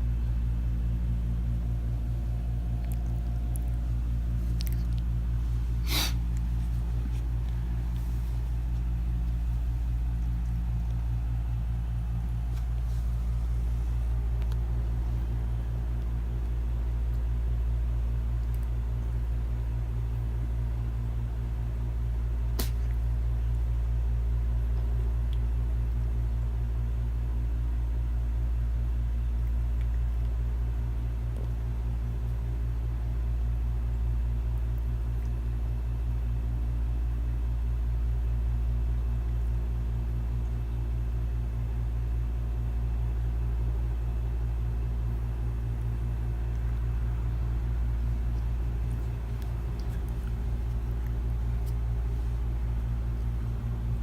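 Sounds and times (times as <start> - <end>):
low-pitched hum with rumble: 0.0 - 54.0.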